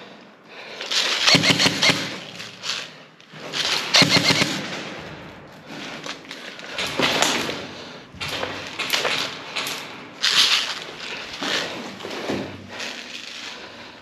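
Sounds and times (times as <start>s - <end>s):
airsoft guns firing rapid shots: 1.2s - 2.5s, 3.9s - 5.0s.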